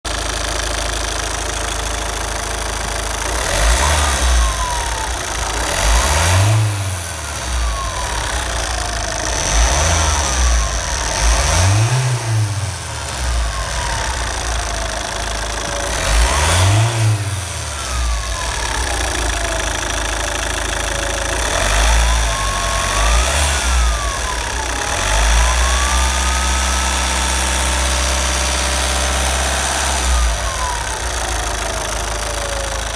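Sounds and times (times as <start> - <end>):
diesel engine revving: 0.1 - 32.9
turbocharger whistle: 21.3 - 32.9.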